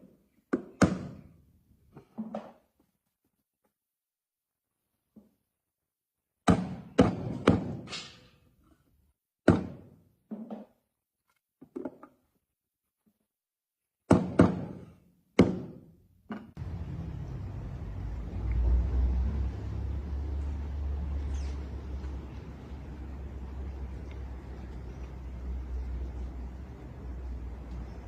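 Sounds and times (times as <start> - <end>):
sharp knocks on wood: 14.1 - 14.8
low rumbling noise: 16.6 - 28.0.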